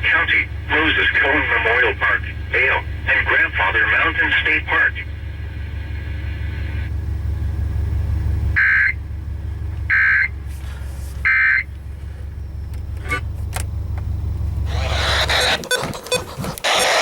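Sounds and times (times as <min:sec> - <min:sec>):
steady low hum: 0:00.0 - 0:17.0
short digital data bursts: 0:14.7 - 0:17.0.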